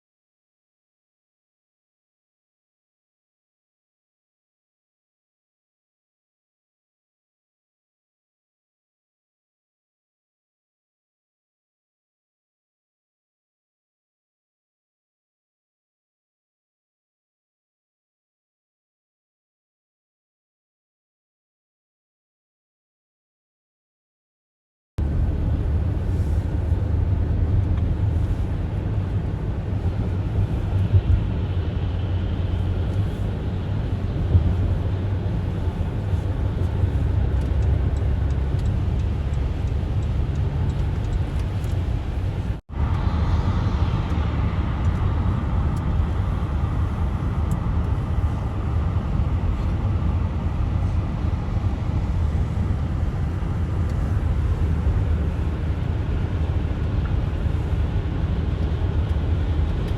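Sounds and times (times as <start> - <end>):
car driving on highway: 25.0 - 59.9.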